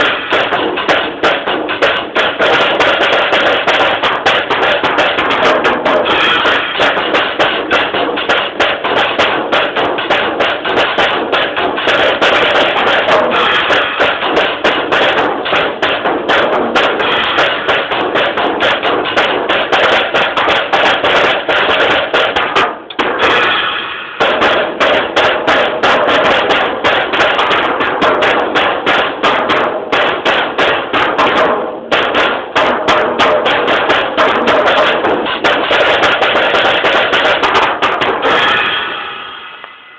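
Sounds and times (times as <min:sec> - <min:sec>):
drum kit solo: 0:00.0 - 0:39.9.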